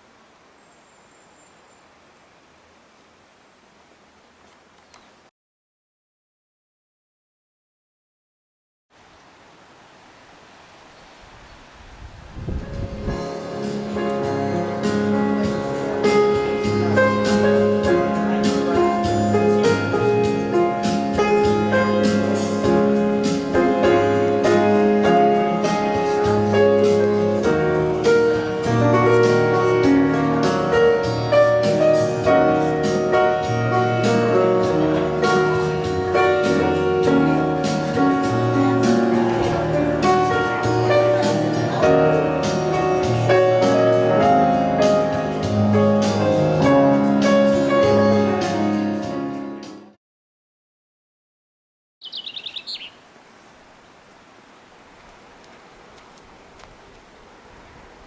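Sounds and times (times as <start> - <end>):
piano-led instrumental music: 12.4 - 50.0.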